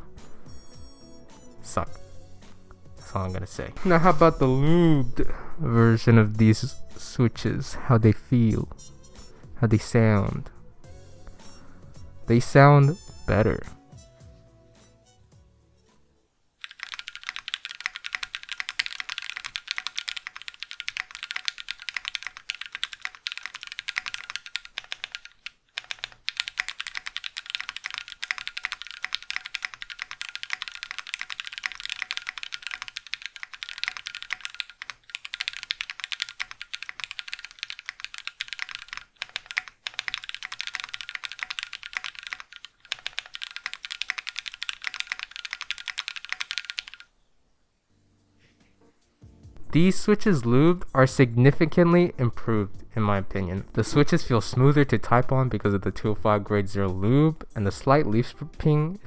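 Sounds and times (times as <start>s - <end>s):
mechanical keyboard typing: 16.6s - 47.1s.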